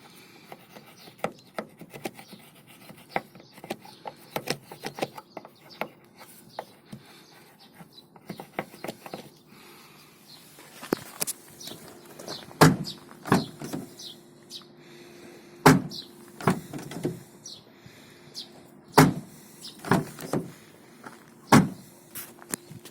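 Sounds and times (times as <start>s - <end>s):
car door clunking shut: 12.2s - 13.9s, 15.6s - 17.2s, 19.0s - 20.5s, 21.5s - 21.8s.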